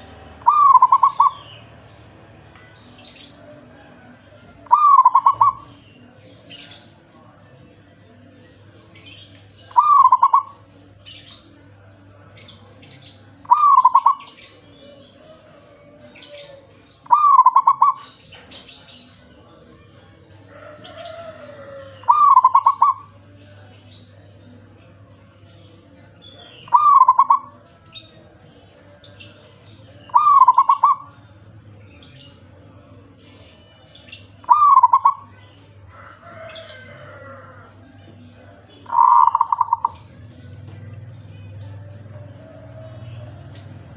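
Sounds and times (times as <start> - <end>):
dove cooing: 0.0 - 1.6, 3.0 - 5.8, 9.7 - 10.7, 13.4 - 15.0, 16.0 - 18.3, 20.5 - 23.2, 26.7 - 27.6, 30.1 - 31.2, 34.4 - 35.3, 38.9 - 40.1
small birds chirping: 0.0 - 43.9.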